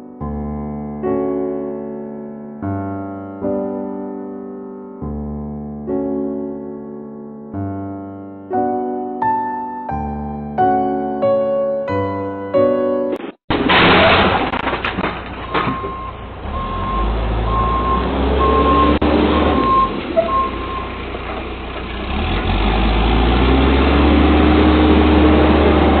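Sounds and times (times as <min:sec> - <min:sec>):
diesel engine running: 0:15.3 - 0:26.0
reverse alarm beeping: 0:15.6 - 0:20.9.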